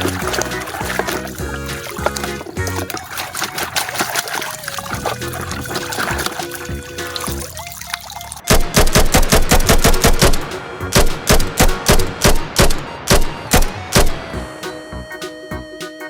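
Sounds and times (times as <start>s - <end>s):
gunshots: 8.5s - 14.2s.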